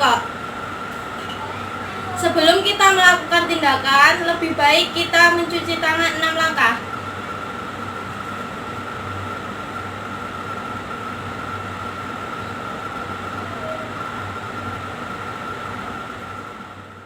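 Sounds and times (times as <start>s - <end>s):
steady high tone: 0.0s - 7.0s.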